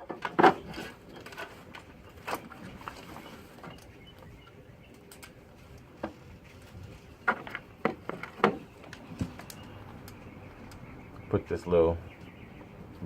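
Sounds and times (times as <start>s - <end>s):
clicks and knocks from handling parts: 4.9s - 10.9s.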